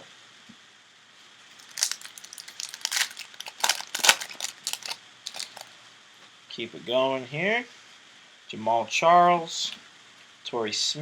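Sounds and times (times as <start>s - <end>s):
wrapper tearing and crinkling: 1.6s - 5.7s.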